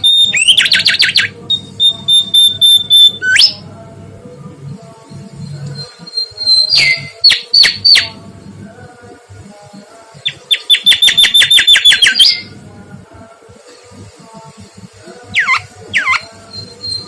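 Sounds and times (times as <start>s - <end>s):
bird whistling song: 0.0s - 3.6s, 5.5s - 8.1s, 10.3s - 12.5s, 15.3s - 17.0s.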